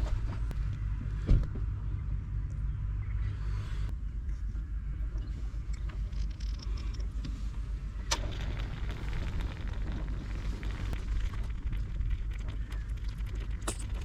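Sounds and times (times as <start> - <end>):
wind buffeting microphone: 7.0 - 14.0
wood fire crackling and popping: 8.1 - 14.0.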